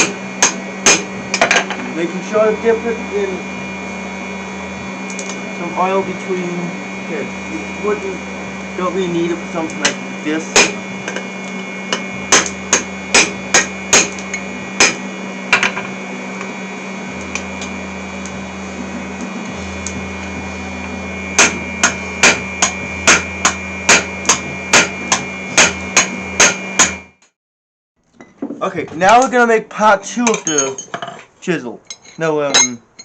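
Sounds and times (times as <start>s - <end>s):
hammer striking metal punch: 0.0s - 1.9s, 9.8s - 11.3s, 11.9s - 15.9s, 21.4s - 27.0s.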